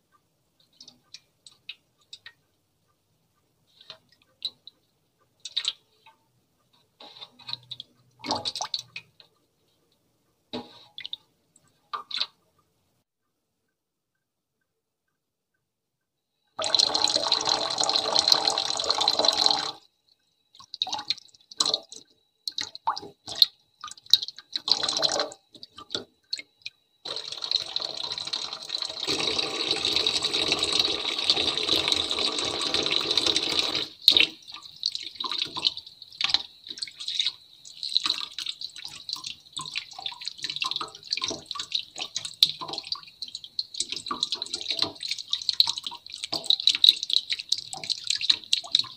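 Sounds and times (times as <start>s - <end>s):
water drips: 0.1s - 9.5s, 10.6s - 12.8s, 16.6s - 48.9s
water pouring and splashing: 27.0s - 48.9s.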